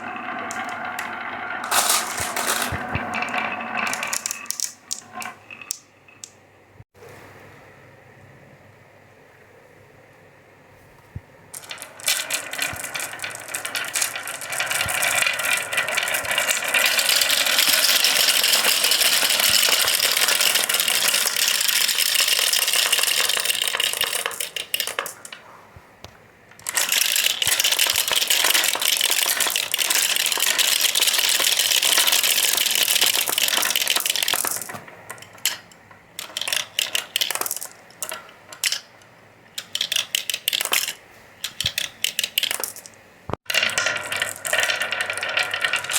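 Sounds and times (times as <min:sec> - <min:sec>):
marbles rattling down marble run: 0:00.0 - 0:06.4, 0:11.6 - 0:25.4, 0:26.6 - 0:38.9, 0:39.6 - 0:45.9.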